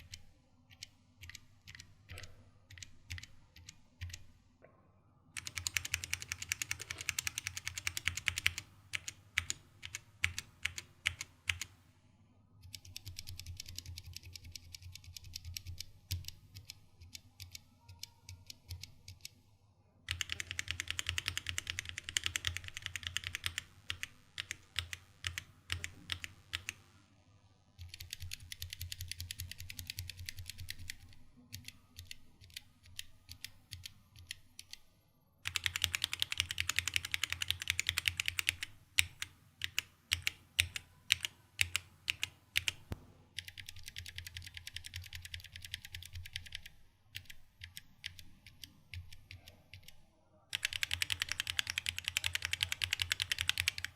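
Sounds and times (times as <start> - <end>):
fast typing on mechanical keyboard: 0.0 - 4.2, 5.4 - 11.7, 12.6 - 19.3, 20.1 - 26.8, 27.8 - 34.8, 35.4 - 42.8, 43.4 - 53.9.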